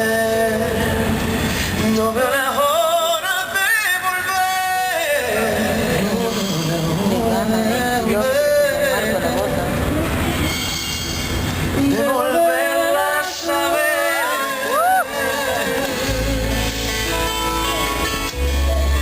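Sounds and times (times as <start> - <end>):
band accompaniment: 9.8 - 12.5, 14.0 - 19.0
person singing long wavering notes: 11.8 - 19.0.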